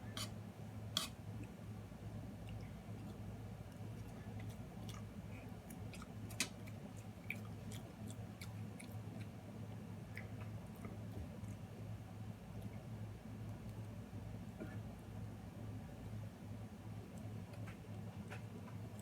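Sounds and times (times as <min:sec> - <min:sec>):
steady low hum: 0:00.0 - 0:19.0
person chewing food: 0:02.4 - 0:09.4.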